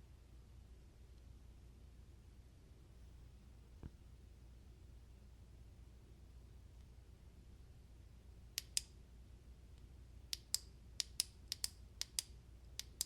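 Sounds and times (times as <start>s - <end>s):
flashlight button clicking: 10.4s - 13.0s.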